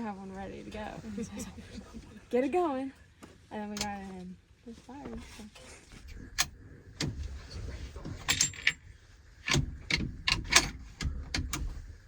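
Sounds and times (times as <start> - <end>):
metal objects clicking and jangling: 8.2 - 8.9.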